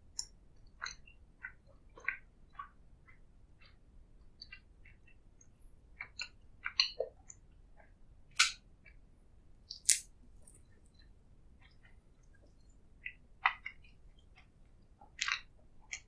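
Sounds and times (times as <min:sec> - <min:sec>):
wet mouth clicks and smacks: 0:09.7 - 0:10.0
person chewing: 0:09.8 - 0:10.0.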